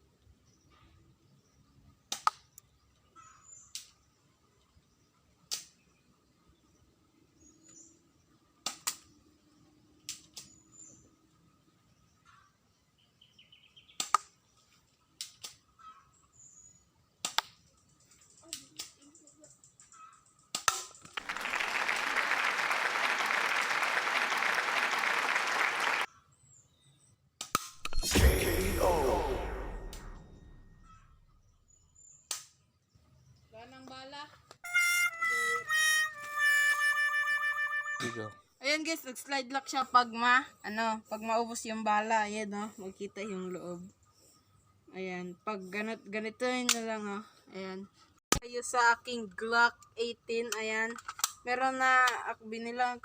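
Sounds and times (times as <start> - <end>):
airsoft pistol shots: 27.8 - 30.9.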